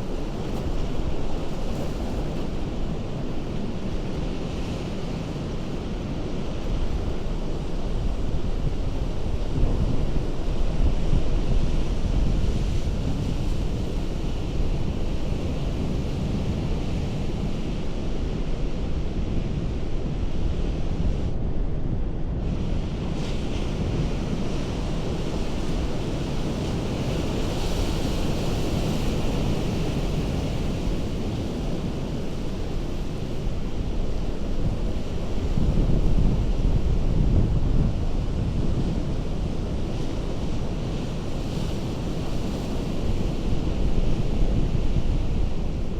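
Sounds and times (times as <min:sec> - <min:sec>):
ocean surf on rocks: 0:00.0 - 0:20.6, 0:22.4 - 0:45.9.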